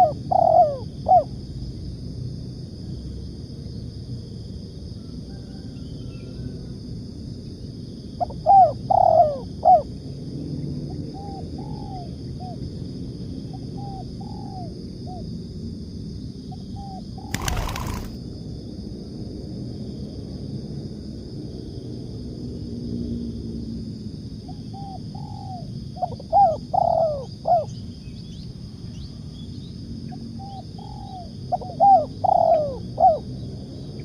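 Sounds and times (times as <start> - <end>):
doves cooing: 0.0 - 1.2, 17.2 - 18.2, 26.3 - 27.7, 30.9 - 33.2.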